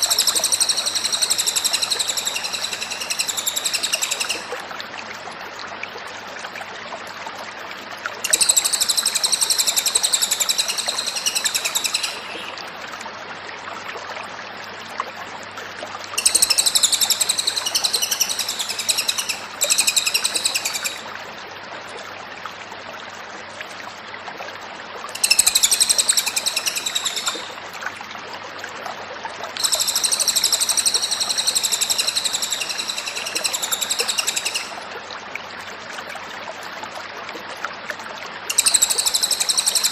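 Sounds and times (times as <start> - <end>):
songbird singing: 0.0 - 4.5, 8.2 - 12.6, 16.2 - 21.0, 25.2 - 27.6, 29.6 - 34.8, 38.5 - 39.9.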